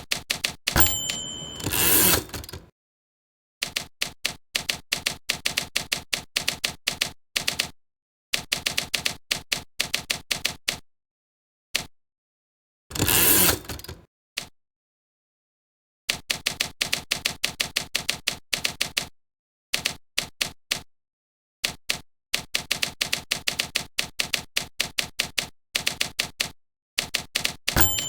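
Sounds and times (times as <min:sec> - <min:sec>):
rapid mechanical key strikes: 0:00.7 - 0:02.6
short bell-like ring: 0:00.8 - 0:02.3, 0:27.8 - 0:28.0.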